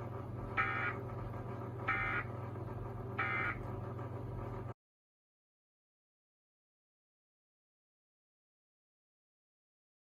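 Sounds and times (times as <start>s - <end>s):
low hum: 0.0s - 4.8s.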